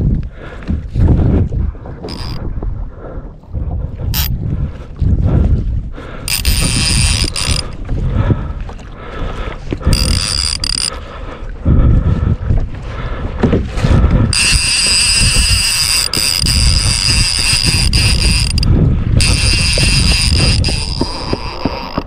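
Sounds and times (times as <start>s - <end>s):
wind buffeting microphone: 0.0s - 22.0s
fishing reel drag whining: 2.0s - 2.4s, 6.3s - 7.8s, 9.8s - 10.9s, 14.3s - 22.0s.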